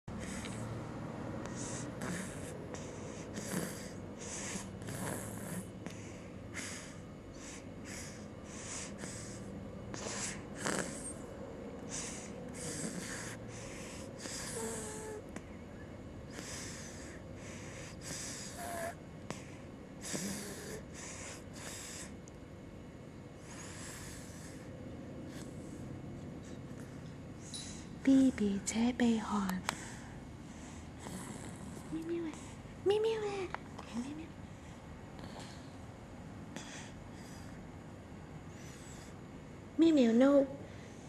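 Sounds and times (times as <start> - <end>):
snoring breaths: 0.1 - 15.4, 16.2 - 22.2, 23.3 - 28.1, 29.6 - 32.8, 34.4 - 35.9, 36.5 - 37.7, 38.4 - 39.2.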